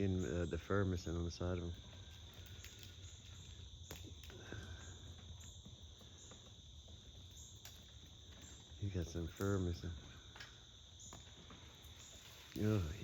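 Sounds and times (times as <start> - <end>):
crickets chirring: 0.0 - 13.0.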